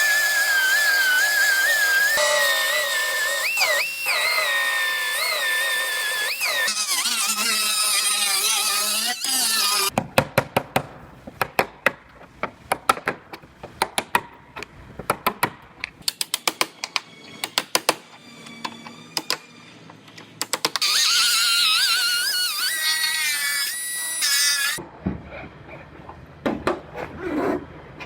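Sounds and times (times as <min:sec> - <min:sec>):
pneumatic cutoff tool cutting metal: 0:00.0 - 0:09.9, 0:20.8 - 0:24.8.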